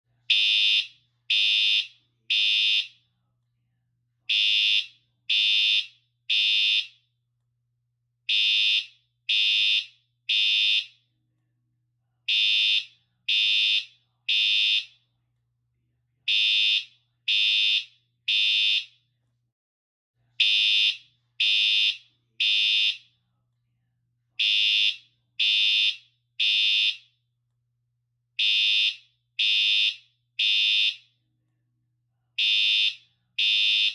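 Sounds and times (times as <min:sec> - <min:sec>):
fire alarm horn blasts: 0:00.3 - 0:03.0, 0:04.3 - 0:07.0, 0:08.3 - 0:11.0, 0:12.3 - 0:15.0, 0:16.3 - 0:19.0, 0:20.4 - 0:23.1, 0:24.4 - 0:27.1, 0:28.4 - 0:31.1, 0:32.4 - 0:33.9.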